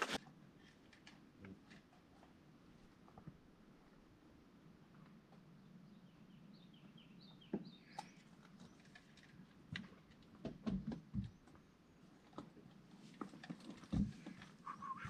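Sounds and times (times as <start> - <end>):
bird-like chirps: 14.6 - 15.0.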